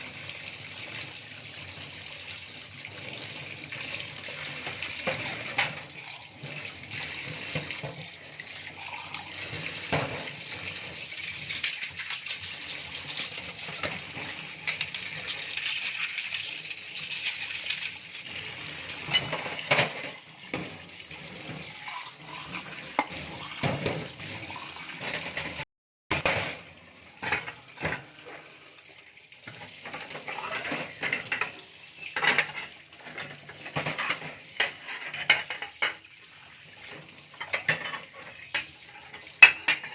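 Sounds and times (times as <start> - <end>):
tap water running: 0.0 - 39.9
plates and cutlery clinking: 19.0 - 20.8, 29.8 - 36.0, 37.4 - 39.9.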